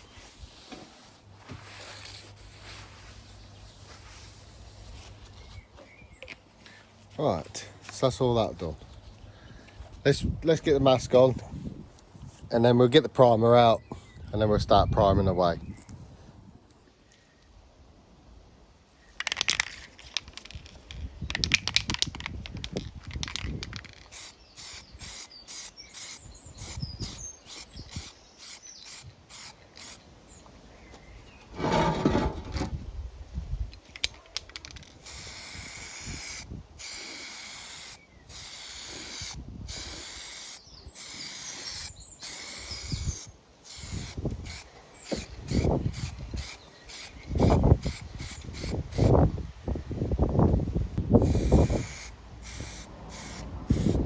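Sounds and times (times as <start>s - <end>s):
aerosol can spraying: 23.2s - 30.0s, 35.0s - 49.2s, 51.2s - 54.0s
handling noise: 31.4s - 32.9s.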